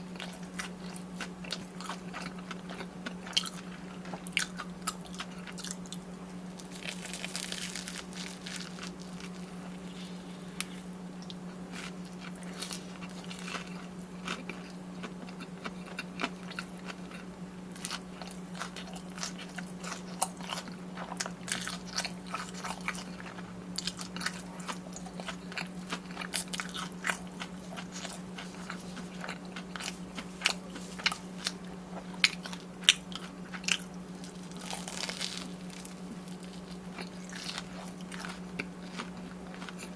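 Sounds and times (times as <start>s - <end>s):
crunching and chewing food: 0.0s - 39.9s
steady low hum: 0.0s - 39.9s.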